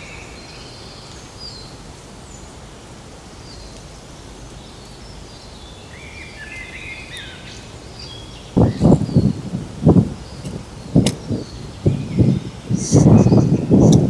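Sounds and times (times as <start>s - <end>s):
small birds chirping: 3.4s - 14.0s
low background rumble: 7.8s - 14.0s.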